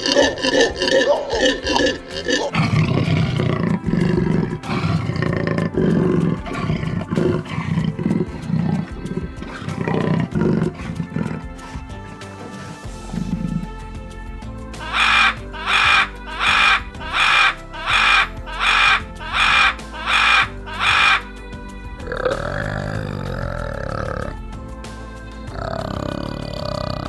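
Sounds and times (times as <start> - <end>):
animal rapid repeated calls: 0.0 - 13.8, 14.8 - 24.4, 25.4 - 27.0
big cat growling and roaring: 0.0 - 13.8, 22.0 - 24.6, 25.4 - 27.0.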